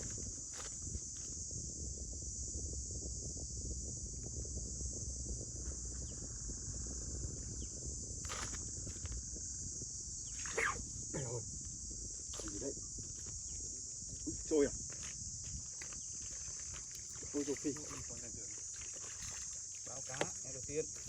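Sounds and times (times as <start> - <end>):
low rumble: 0.0 - 10.2
insects chirring: 0.0 - 21.0.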